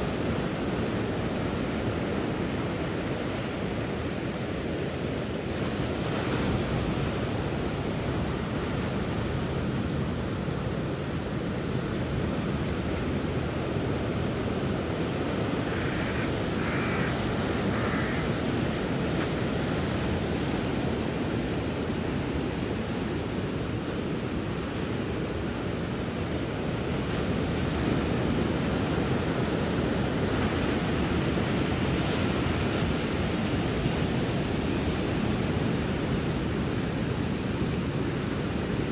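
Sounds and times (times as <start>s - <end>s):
wind: 0.0s - 38.9s
surf breaking on beach: 12.2s - 22.2s.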